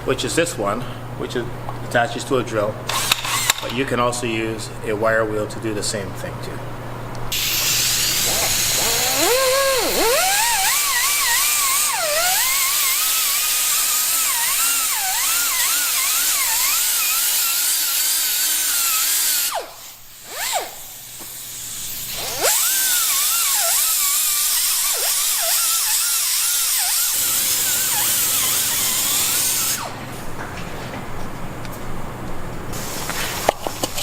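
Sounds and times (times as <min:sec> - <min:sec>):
electric drill whining: 0:07.3 - 0:19.7, 0:22.2 - 0:30.0.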